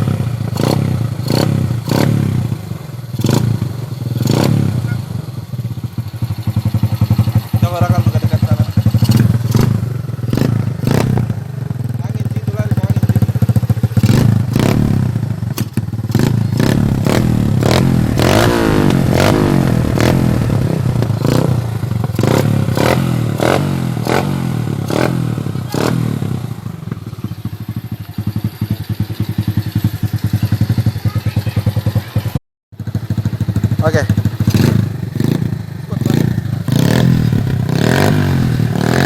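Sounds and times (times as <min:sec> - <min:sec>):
motorcycle engine revving: 0:00.0 - 0:39.0.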